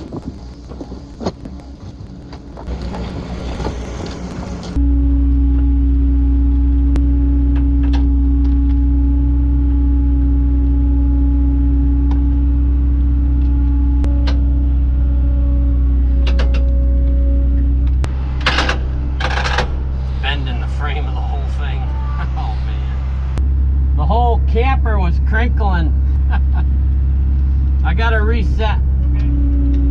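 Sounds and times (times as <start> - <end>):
faint clicks and creaks: 0.0 - 4.8, 16.0 - 20.3
excavator engine drone: 0.0 - 29.9
hydraulic whine: 0.0 - 29.9.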